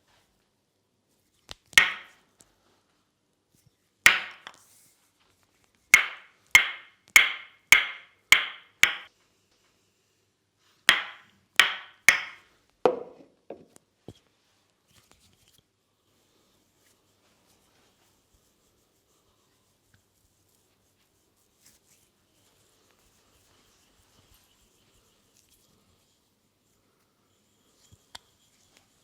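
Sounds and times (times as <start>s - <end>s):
wooden mallet knocking wood: 1.8s - 2.1s, 4.1s - 4.5s, 6.0s - 9.1s, 10.9s - 13.6s.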